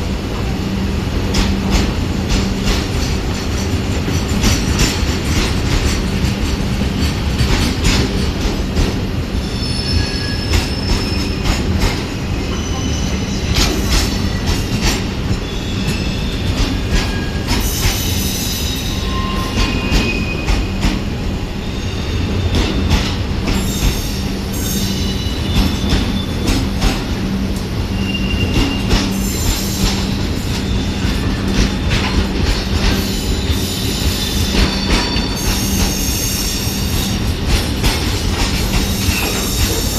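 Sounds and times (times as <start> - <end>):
train wheels clattering over rails: 0.0 - 21.4, 22.1 - 39.9
wheel flange squeals: 15.4 - 20.7.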